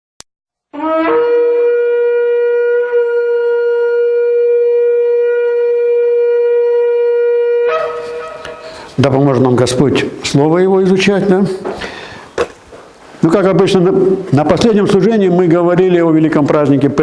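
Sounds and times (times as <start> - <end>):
shofar blast: 0.8 - 9.0.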